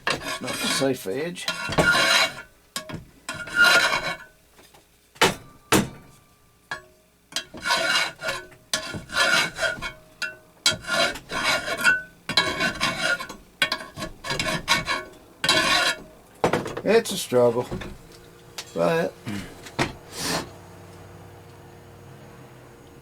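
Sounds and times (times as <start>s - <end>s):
file rasping across metal: 0.0s - 2.5s, 3.3s - 4.3s, 7.4s - 10.0s, 10.7s - 16.1s.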